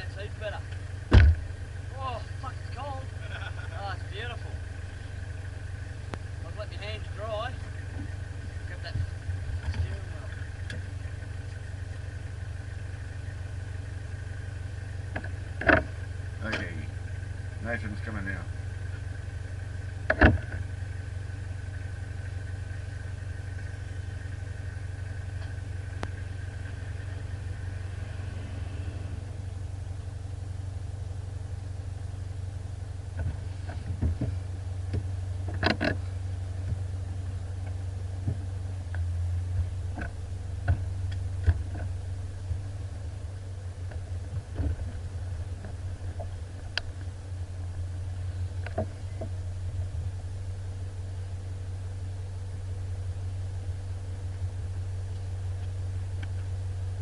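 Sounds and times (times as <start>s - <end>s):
vehicle engine idling: 0.0s - 57.0s
sharp knocks and clunks: 1.0s - 1.5s, 15.1s - 16.7s, 20.0s - 20.7s, 33.1s - 36.0s, 39.5s - 41.9s, 43.9s - 45.0s.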